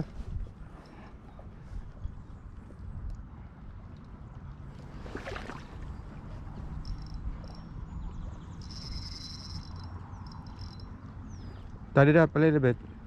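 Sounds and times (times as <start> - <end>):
low wind rumble: 0.0 - 13.0
high-pitched bird or insect call: 8.5 - 10.9.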